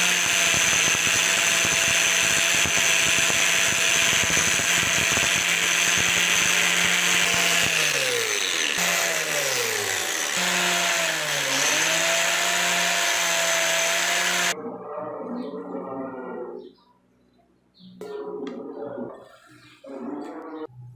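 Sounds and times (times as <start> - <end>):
electric power tool motor running: 0.0 - 14.6.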